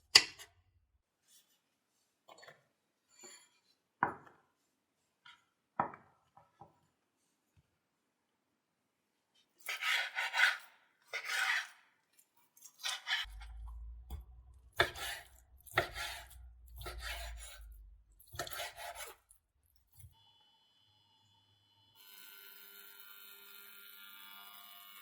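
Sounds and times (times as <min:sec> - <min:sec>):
knife slicing on chopping board: 0:09.7 - 0:11.7, 0:14.8 - 0:19.2.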